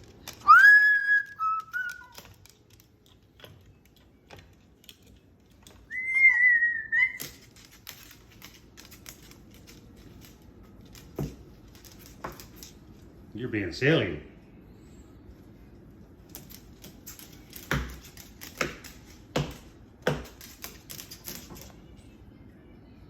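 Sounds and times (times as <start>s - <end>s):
parrot whistling: 0.4s - 2.2s, 5.9s - 7.4s.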